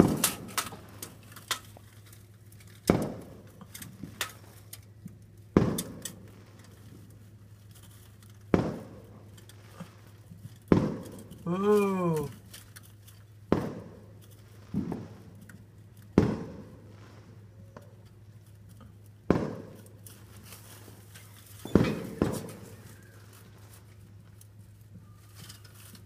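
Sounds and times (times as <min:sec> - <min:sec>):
distant fireworks bangs: 0:00.0 - 0:01.2, 0:02.9 - 0:04.6, 0:05.5 - 0:07.2, 0:08.5 - 0:11.5, 0:13.5 - 0:15.4, 0:16.1 - 0:18.0, 0:19.2 - 0:20.0, 0:21.6 - 0:23.7
low steady hum: 0:00.0 - 0:26.0.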